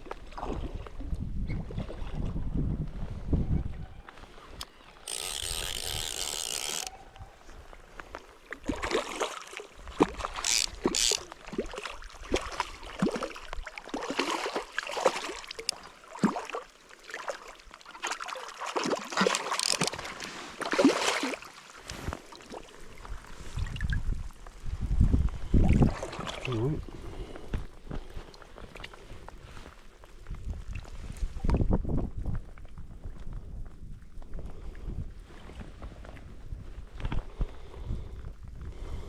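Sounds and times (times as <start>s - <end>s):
river water splashing and gurgling: 0.0s - 2.5s, 7.9s - 24.8s, 25.6s - 27.2s.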